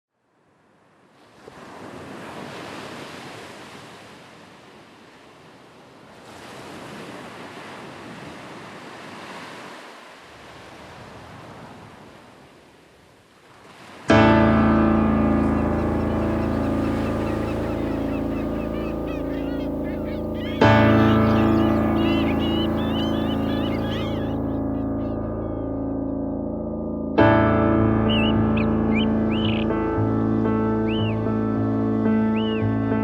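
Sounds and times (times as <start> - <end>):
ocean waves washing: 0.4 - 25.8, 27.4 - 33.0
sustained keyboard chord: 14.1 - 33.0.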